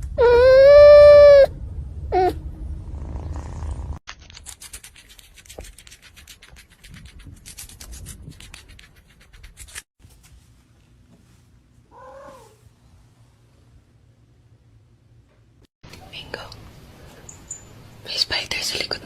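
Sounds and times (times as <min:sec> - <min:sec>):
cat meowing: 0:00.2 - 0:01.5, 0:11.9 - 0:12.6
rapid clicking and scratching: 0:03.3 - 0:09.9.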